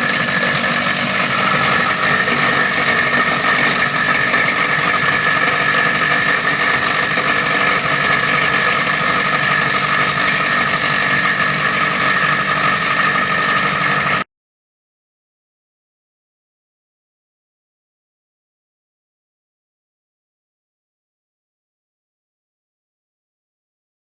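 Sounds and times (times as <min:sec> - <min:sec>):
shredder mechanical drone: 0:00.0 - 0:14.3.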